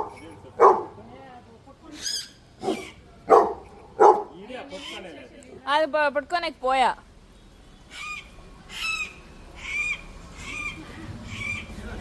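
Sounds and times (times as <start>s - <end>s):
bird squawking calls: 1.9s - 3.1s, 4.1s - 5.3s, 7.9s - 12.0s.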